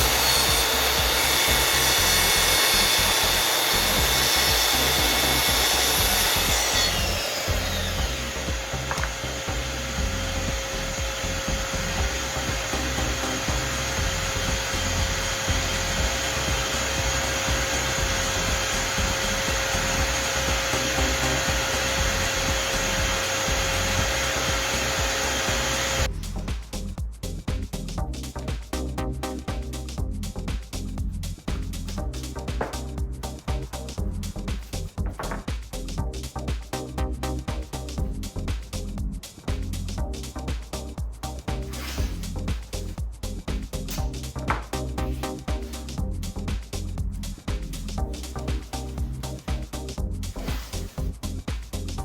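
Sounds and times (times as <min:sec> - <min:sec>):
power tool working on wood: 0:00.0 - 0:26.1.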